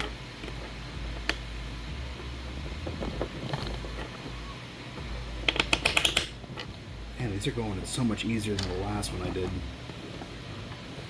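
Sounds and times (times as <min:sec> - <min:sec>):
plastic parts rubbing and clattering: 0:00.0 - 0:01.6, 0:02.2 - 0:06.8.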